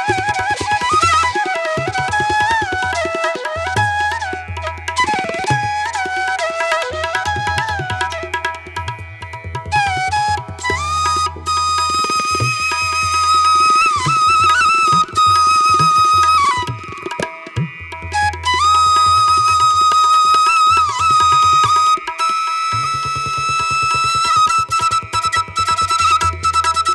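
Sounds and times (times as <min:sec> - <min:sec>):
wind instrument melody: 0:00.0 - 0:17.3, 0:18.0 - 0:26.9
hand drum beat: 0:13.7 - 0:18.3.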